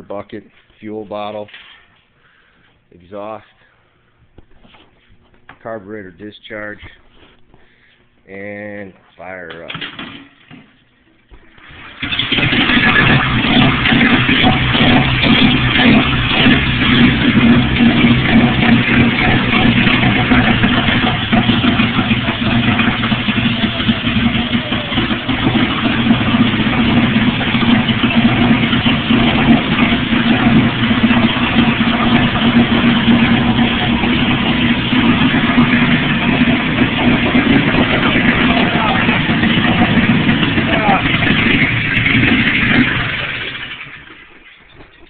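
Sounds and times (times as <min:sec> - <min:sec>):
generator engine running steadily: 0:12.0 - 0:44.0.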